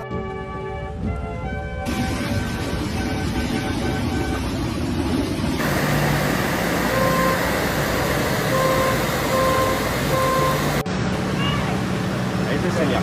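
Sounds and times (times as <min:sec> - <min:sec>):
street traffic: 0:00.0 - 0:13.0
car horn honking: 0:08.4 - 0:10.8.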